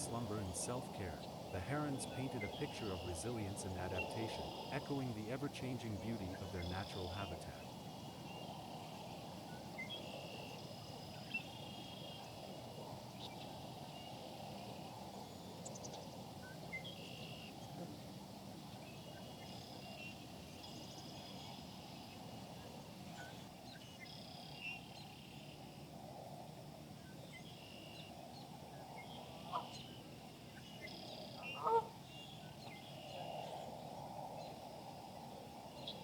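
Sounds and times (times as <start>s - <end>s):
steady low rush: 0.0s - 7.6s.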